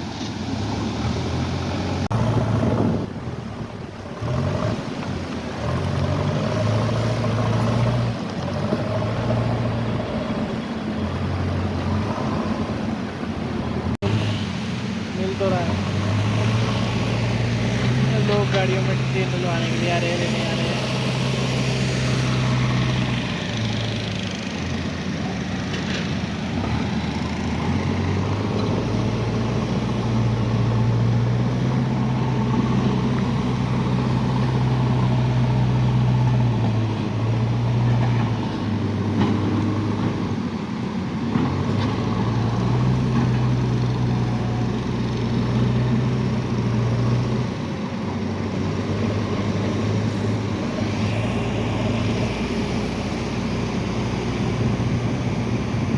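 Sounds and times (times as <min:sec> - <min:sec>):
road noise: 0:00.0 - 0:55.9
vehicle engine running: 0:41.3 - 0:55.9.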